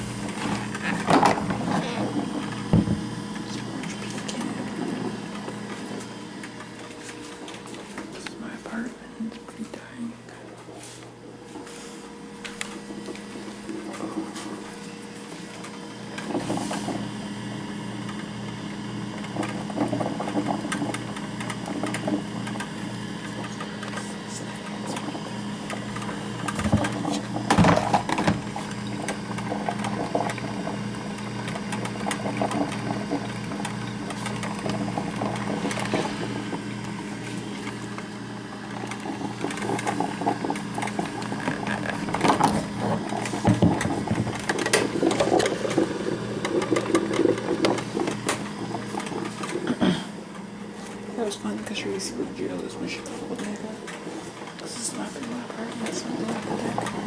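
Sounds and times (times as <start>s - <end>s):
coffee maker humming: 0.0s - 57.0s
water sputtering: 18.9s - 57.0s.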